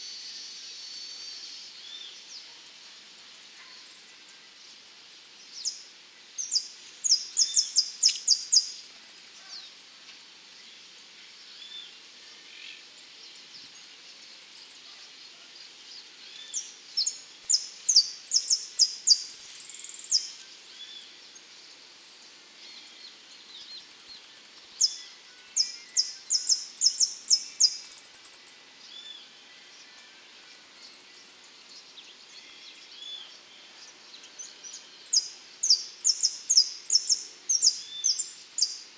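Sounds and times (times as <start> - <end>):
finch chirps: 6.4 - 9.9, 16.0 - 21.1, 22.7 - 29.2, 30.4 - 38.9.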